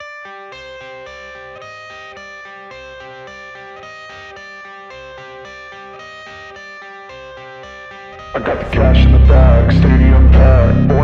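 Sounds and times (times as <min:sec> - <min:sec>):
plucked guitar intro: 0:08.2 - 0:11.0.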